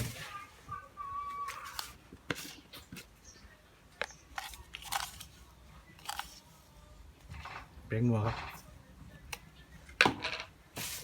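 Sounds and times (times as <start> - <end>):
scraping and rustling: 0.0 - 0.8.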